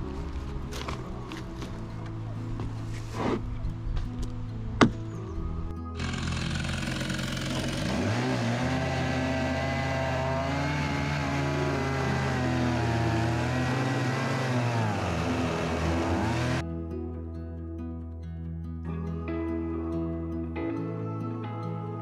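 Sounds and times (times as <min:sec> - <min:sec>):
chainsaw cutting log: 0:06.0 - 0:16.6.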